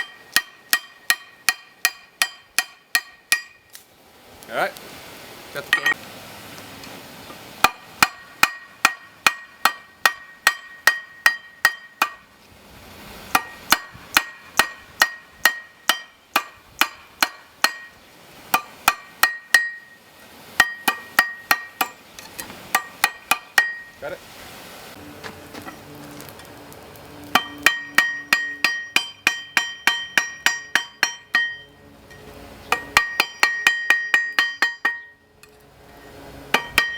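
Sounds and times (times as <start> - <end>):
hammer clanging on steel: 0.0 - 3.7, 5.7 - 6.0, 7.6 - 12.3, 13.3 - 20.0, 20.6 - 24.0, 27.3 - 35.6, 36.5 - 36.9.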